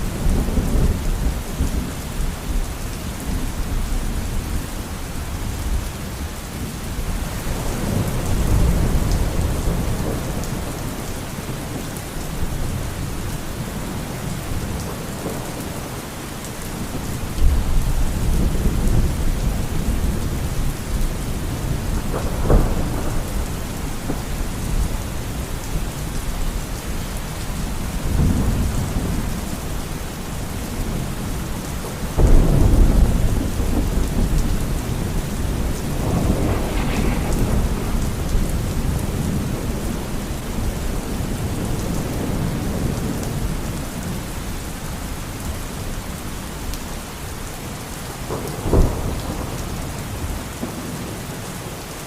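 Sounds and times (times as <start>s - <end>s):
heavy rain: 0.0s - 52.0s
thunder rumbling: 7.2s - 44.3s, 48.2s - 50.9s
sharp thunderclap: 21.3s - 25.8s, 32.2s - 43.4s, 48.3s - 50.8s.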